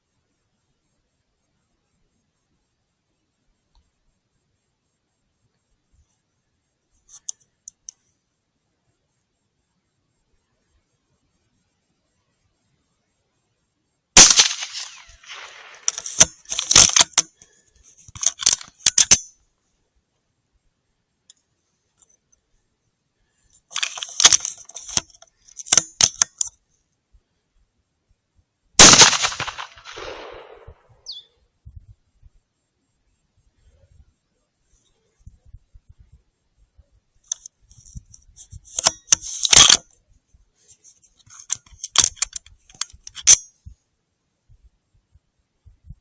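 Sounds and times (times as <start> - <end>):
rifle shots: 14.2 - 17.2, 28.8 - 30.9
rifle action metallic clicks: 14.2 - 17.3, 18.1 - 19.3, 23.7 - 26.5, 28.8 - 30.8, 38.7 - 39.8, 41.3 - 43.5.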